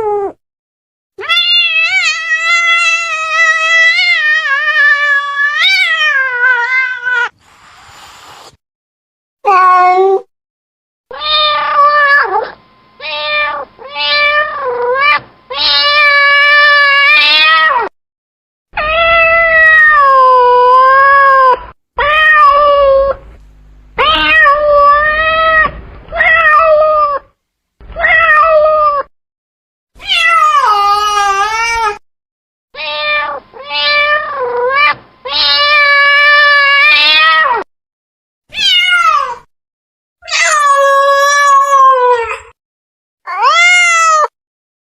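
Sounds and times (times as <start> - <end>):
cat meowing: 1.2 - 7.4, 11.1 - 17.9, 18.8 - 23.4, 24.0 - 27.3, 30.0 - 32.0, 32.8 - 37.6, 38.5 - 39.5, 40.2 - 42.5, 43.3 - 44.3.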